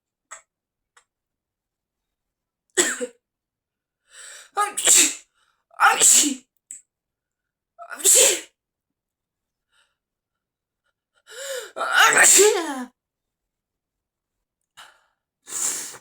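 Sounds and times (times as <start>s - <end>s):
person sneezing: 4.7s - 5.2s, 5.8s - 6.4s, 7.9s - 8.5s, 11.8s - 12.8s.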